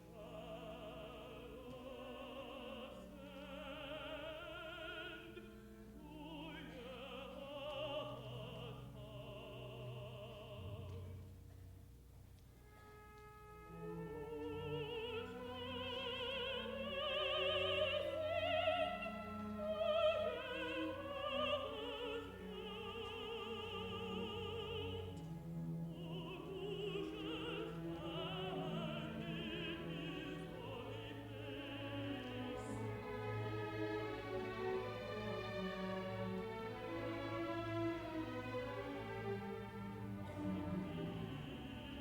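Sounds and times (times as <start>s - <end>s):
symphony orchestra playing: 12.6s - 42.0s
woman singing with vibrato: 14.1s - 25.1s, 25.9s - 32.8s.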